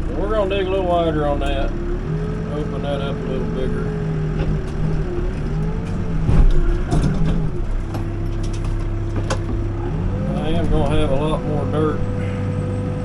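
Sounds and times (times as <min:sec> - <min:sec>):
backhoe engine under load: 0:00.0 - 0:13.0
bucket clanks and knocks: 0:05.8 - 0:09.8.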